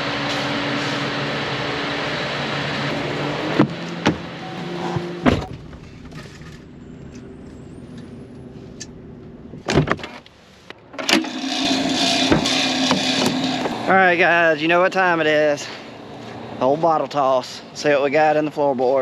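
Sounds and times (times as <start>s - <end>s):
vehicle engine running: 0.0s - 9.6s, 11.2s - 18.6s
sharp thumps: 2.9s - 6.8s, 11.1s - 14.4s.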